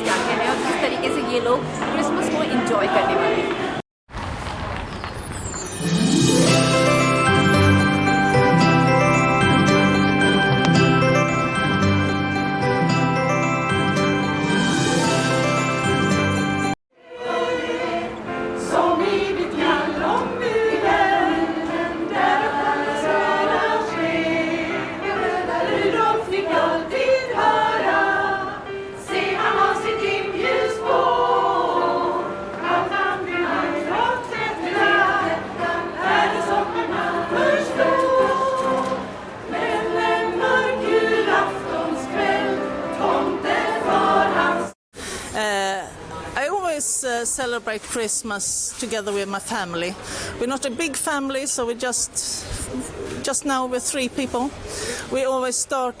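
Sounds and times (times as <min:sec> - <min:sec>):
choir singing: 0:00.1 - 0:03.8, 0:05.7 - 0:44.8.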